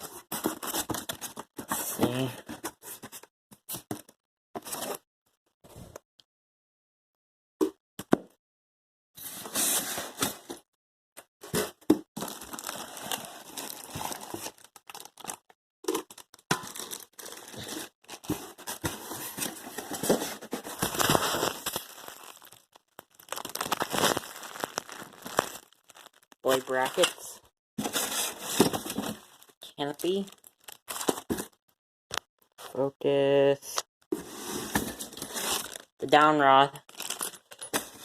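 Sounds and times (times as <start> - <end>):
paper and plastic crinkling: 12.2 - 31.6, 34.2 - 35.9, 36.8 - 38.0.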